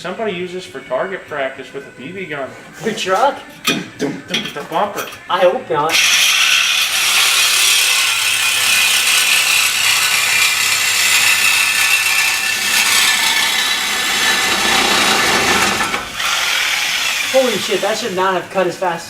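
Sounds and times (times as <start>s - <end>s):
power tool cutting steel pipe: 5.9s - 18.5s.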